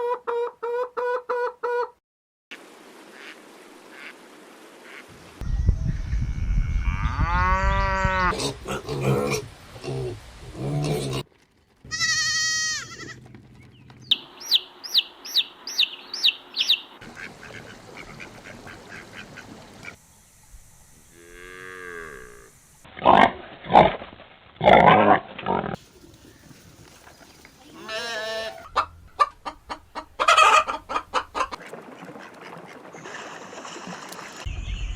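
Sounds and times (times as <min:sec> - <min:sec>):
animals lowing and bleating: 0:06.3 - 0:09.2, 0:11.9 - 0:13.2, 0:27.7 - 0:28.7.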